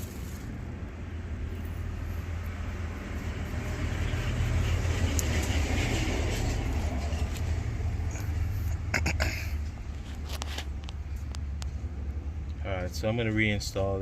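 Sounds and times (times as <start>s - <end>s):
vehicle rumble: 0.0s - 14.0s.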